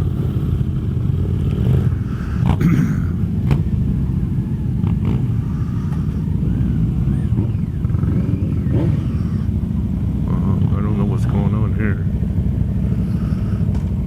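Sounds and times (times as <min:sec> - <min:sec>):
motorcycle engines idling: 0:00.0 - 0:14.0.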